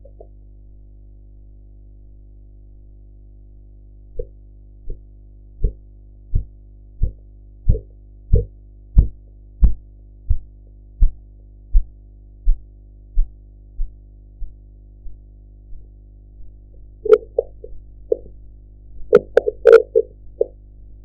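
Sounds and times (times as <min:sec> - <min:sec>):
low hum: 0:00.0 - 0:21.0
pulse thumps: 0:16.4 - 0:18.4, 0:19.0 - 0:20.5.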